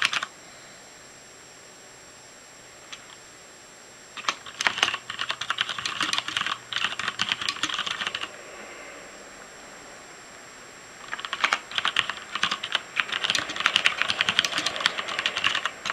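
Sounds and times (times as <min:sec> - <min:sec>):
mechanical keyboard key clacks: 0:04.2 - 0:08.3, 0:11.0 - 0:15.9.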